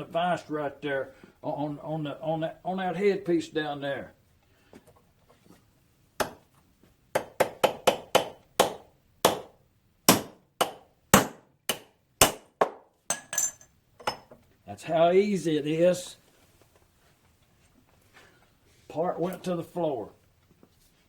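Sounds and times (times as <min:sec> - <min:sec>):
hammer striking metal punch: 0:10.1 - 0:13.6.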